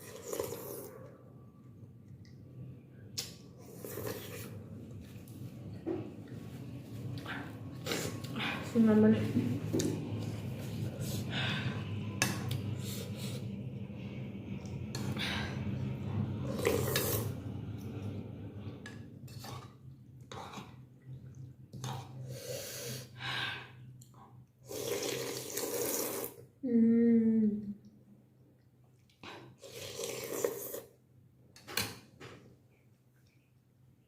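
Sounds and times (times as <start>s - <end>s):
slurping noodles and broth: 0.0s - 1.1s, 3.2s - 5.4s, 7.0s - 8.7s, 12.4s - 13.5s, 15.0s - 20.8s, 21.4s - 23.2s, 24.6s - 26.5s, 29.2s - 31.0s.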